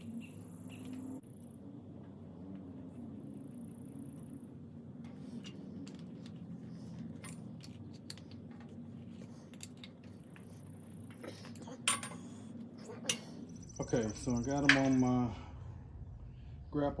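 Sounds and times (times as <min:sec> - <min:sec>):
steady low hum: 0:00.0 - 0:17.0
insect trilling: 0:13.2 - 0:15.5.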